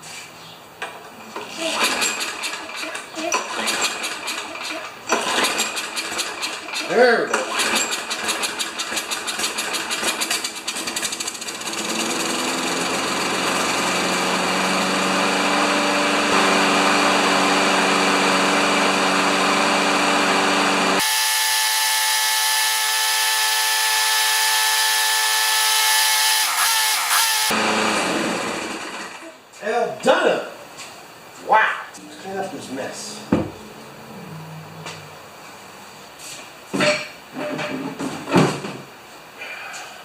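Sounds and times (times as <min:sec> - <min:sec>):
riding mower engine running: 0:07.5 - 0:29.2.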